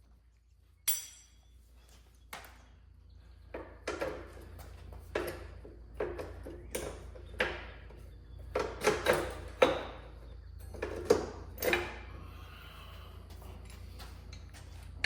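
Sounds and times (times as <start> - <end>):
hand tools knocking and clanking: 0.9 - 1.5, 3.5 - 12.1.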